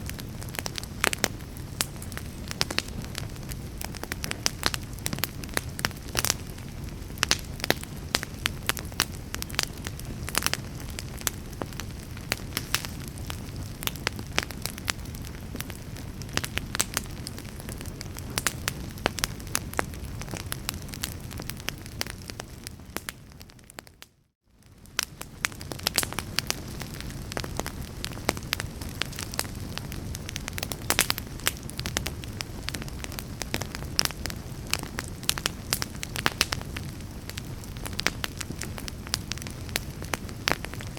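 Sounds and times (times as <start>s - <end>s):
fire crackling and popping: 0.0s - 40.9s.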